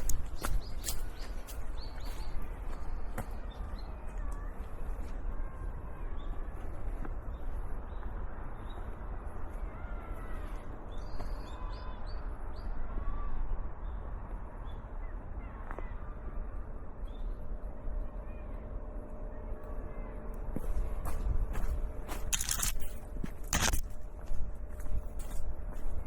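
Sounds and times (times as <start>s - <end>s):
steady low rumble: 0.0s - 26.0s.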